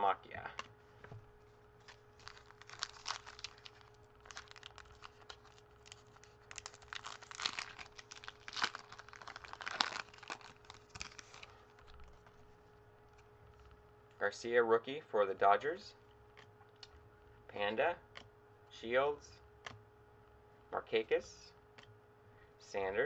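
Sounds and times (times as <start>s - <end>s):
foil wrapper tearing and crinkling: 1.8s - 12.5s.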